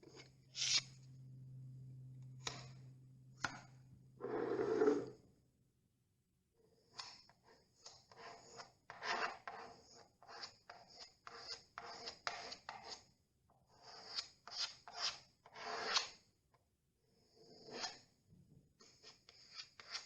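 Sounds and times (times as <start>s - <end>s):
filler knife scraping: 7.0s - 13.0s, 13.7s - 16.2s, 17.4s - 18.1s, 18.8s - 20.0s.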